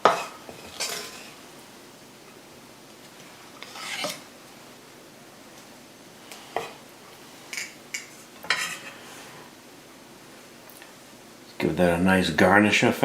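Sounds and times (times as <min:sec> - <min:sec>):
utensil scraping cookware: 0:00.0 - 0:01.4, 0:03.6 - 0:04.3, 0:07.5 - 0:09.0.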